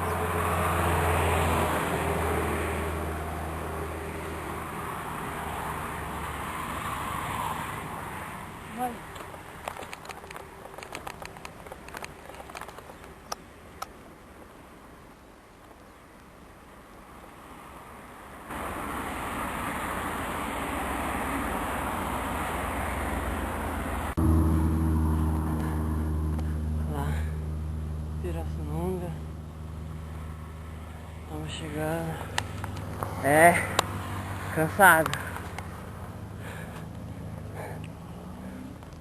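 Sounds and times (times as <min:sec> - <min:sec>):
rushing road noise: 0:00.0 - 0:39.0
sharp ticks: 0:09.1 - 0:13.9
low engine drone: 0:22.2 - 0:39.0.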